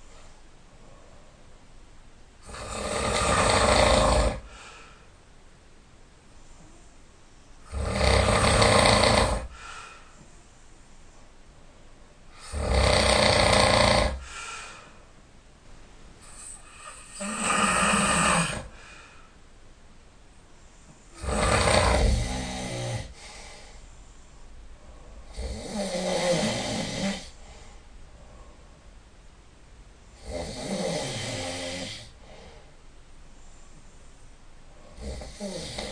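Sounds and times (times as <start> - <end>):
quiet breathing: 0.0 - 35.9
person snoring: 2.4 - 4.6, 7.6 - 9.6, 12.3 - 14.8, 16.2 - 18.8, 21.1 - 23.4, 25.2 - 27.4, 30.2 - 32.5, 34.8 - 35.9.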